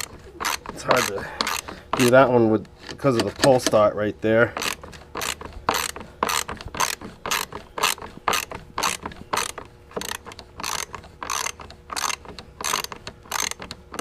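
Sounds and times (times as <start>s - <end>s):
ratchet wrench clicking: 0.0s - 2.3s, 4.6s - 14.0s.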